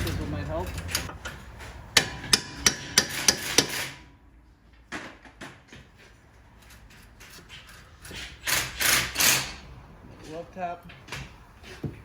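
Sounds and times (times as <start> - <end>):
hammer striking metal: 2.0 - 4.0.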